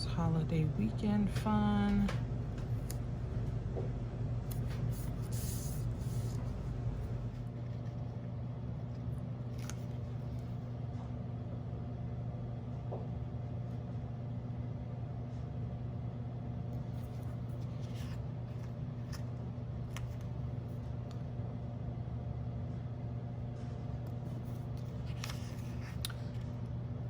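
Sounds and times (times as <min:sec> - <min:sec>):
steady low hum: 0:00.0 - 0:27.0
paper and stickers rustling: 0:24.3 - 0:26.5.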